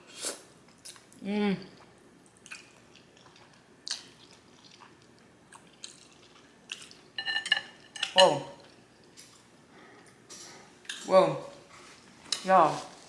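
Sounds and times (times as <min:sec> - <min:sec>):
utensil clinking on bowl: 0:07.2 - 0:08.4.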